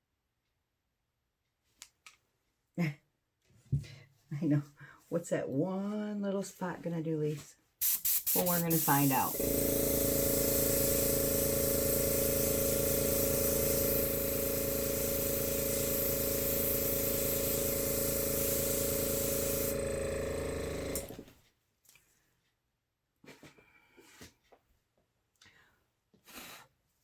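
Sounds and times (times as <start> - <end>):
airbrush air hiss: 7.8 - 21.1
airbrush compressor pulsing: 7.8 - 21.3.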